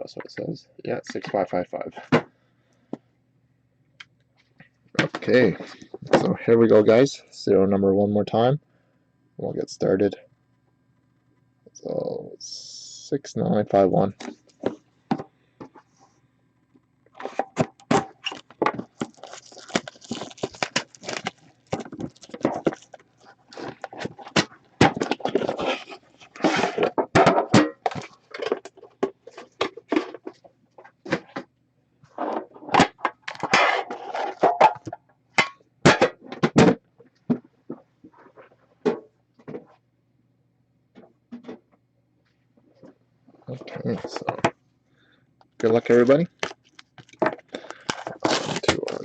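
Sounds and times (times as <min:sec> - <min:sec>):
plastic wrap crinkling and tearing: 0:18.2 - 0:24.4, 0:46.0 - 0:49.0.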